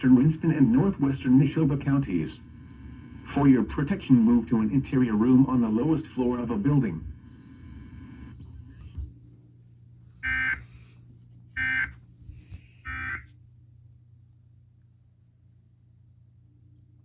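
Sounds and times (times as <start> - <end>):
screeching digital data tones: 1.8 - 3.6.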